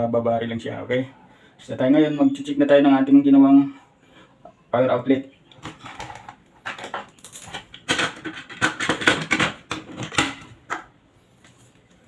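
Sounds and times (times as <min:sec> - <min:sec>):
plastic and metal parts clattering: 0:05.5 - 0:10.9.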